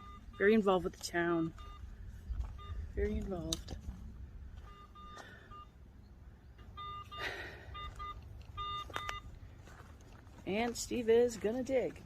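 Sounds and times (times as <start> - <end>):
metal detector beeps: 0.0 - 3.8, 4.6 - 5.8, 6.6 - 9.4.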